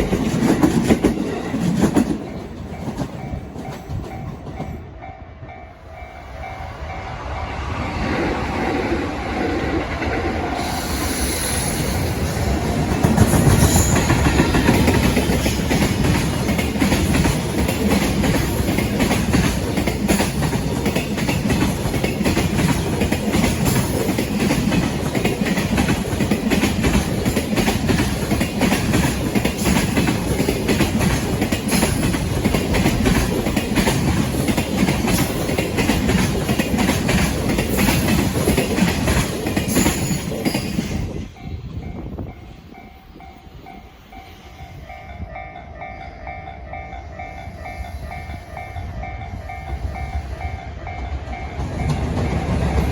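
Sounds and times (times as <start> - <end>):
freight train wheels clattering: 0.0 - 4.9, 9.3 - 44.2, 46.3 - 52.9.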